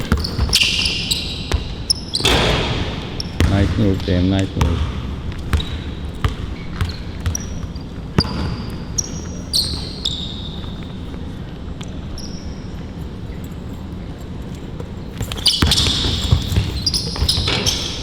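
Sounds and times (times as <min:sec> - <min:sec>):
basketball bouncing on court: 0:00.0 - 0:10.9, 0:14.5 - 0:18.0
sneakers squeaking on court: 0:00.0 - 0:18.0.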